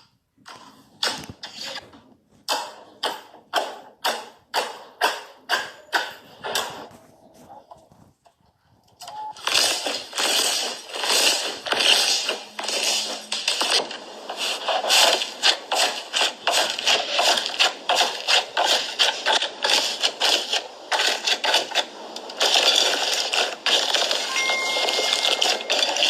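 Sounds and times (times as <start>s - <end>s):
slime crackling: 9.4s - 21.8s.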